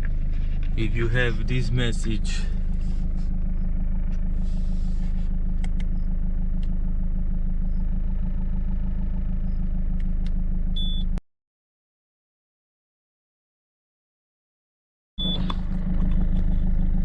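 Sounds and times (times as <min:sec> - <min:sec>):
diesel engine idling: 0:00.0 - 0:11.2, 0:15.2 - 0:17.0
light clicks: 0:05.6 - 0:06.0.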